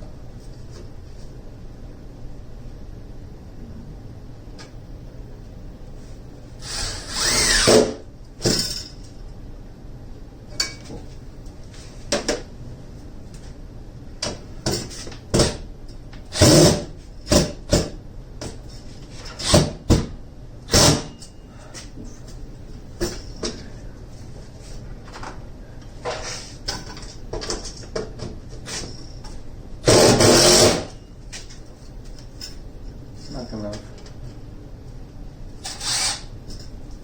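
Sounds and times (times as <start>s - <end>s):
cordless drill driving screws: 6.6s - 7.9s, 29.9s - 30.8s, 35.6s - 36.3s.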